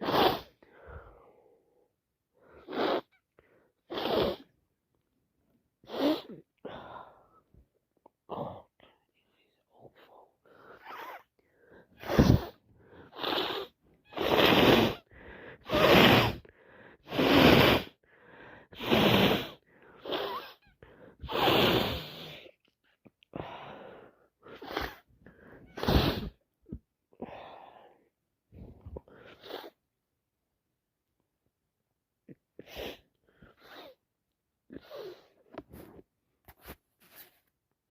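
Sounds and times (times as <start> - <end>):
woman sneezing and sniffing: 0.0 - 0.6, 2.6 - 3.1, 3.9 - 4.5, 5.8 - 6.5, 11.9 - 18.0, 18.7 - 22.6, 24.4 - 26.4, 28.8 - 29.8, 32.5 - 34.0, 34.7 - 36.0.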